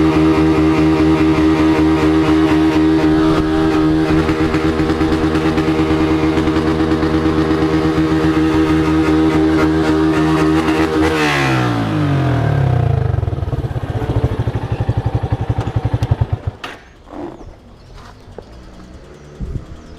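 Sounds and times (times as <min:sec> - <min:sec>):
loud engine revving and idling: 0:00.0 - 0:16.5.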